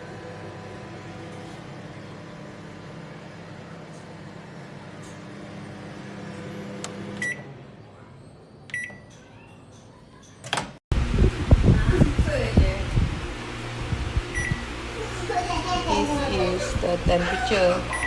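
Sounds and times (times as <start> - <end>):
microwave oven humming: 0.0 - 18.0
microwave short beeps: 7.2 - 7.5, 8.7 - 9.1, 14.3 - 14.6.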